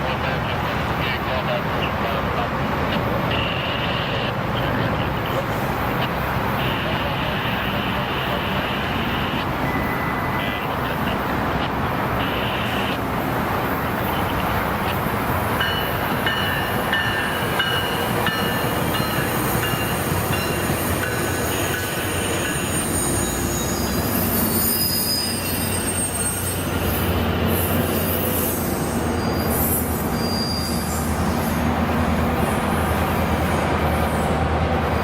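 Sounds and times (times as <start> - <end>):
train rolling on rails: 0.0 - 35.0
train wheels squealing: 9.6 - 10.4, 15.7 - 31.7.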